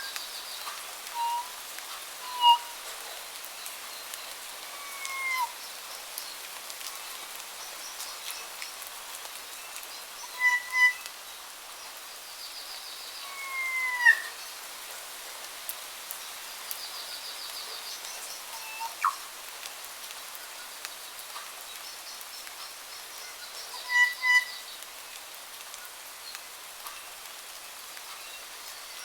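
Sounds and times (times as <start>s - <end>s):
forest birds calling: 0.0s - 14.7s, 16.2s - 19.4s, 20.4s - 25.2s
steady hiss: 0.0s - 29.0s
bird whistled call: 1.2s - 1.5s, 2.2s - 2.8s, 13.2s - 14.3s, 18.5s - 19.2s.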